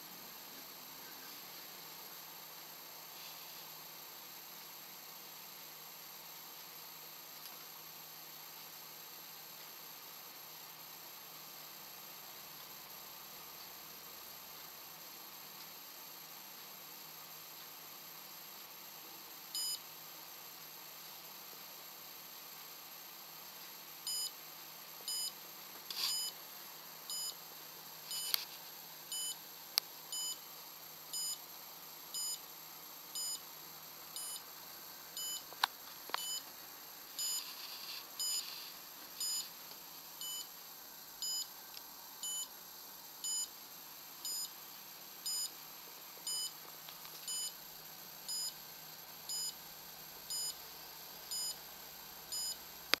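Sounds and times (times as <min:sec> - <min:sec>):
high-pitched alarm buzzer beeps: 0:19.6 - 0:19.8, 0:24.1 - 0:24.4, 0:25.1 - 0:25.4, 0:26.0 - 0:26.4, 0:27.1 - 0:27.4, 0:28.1 - 0:28.4, 0:29.1 - 0:29.4, 0:30.1 - 0:30.4, 0:31.1 - 0:31.4, 0:32.2 - 0:32.4, 0:33.2 - 0:33.5, 0:34.2 - 0:34.4, 0:35.2 - 0:35.5, 0:36.2 - 0:36.4, 0:37.2 - 0:37.6, 0:38.2 - 0:38.5, 0:39.2 - 0:39.5, 0:40.2 - 0:40.5, 0:41.2 - 0:41.5, 0:42.2 - 0:42.5, 0:43.2 - 0:43.6, 0:44.2 - 0:44.6, 0:45.2 - 0:45.6, 0:46.3 - 0:46.6, 0:47.3 - 0:47.6, 0:48.3 - 0:48.6, 0:49.3 - 0:49.6, 0:50.3 - 0:50.6, 0:51.3 - 0:51.6, 0:52.3 - 0:52.6.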